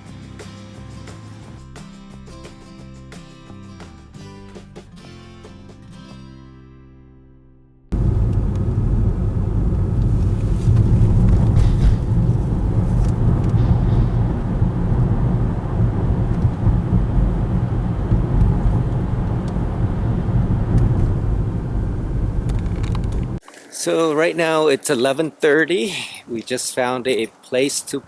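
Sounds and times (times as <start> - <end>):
car engine and road rumble: 7.9 - 23.5.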